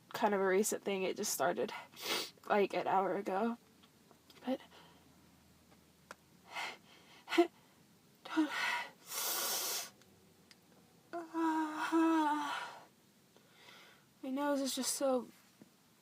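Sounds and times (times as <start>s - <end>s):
person breathing with a head cold: 8.5s - 10.0s, 11.9s - 14.1s.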